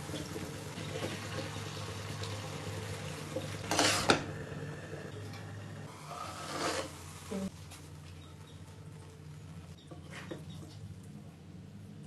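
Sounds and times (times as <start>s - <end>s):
utensil scraping a cooking pot: 3.6s - 4.2s, 6.0s - 7.1s.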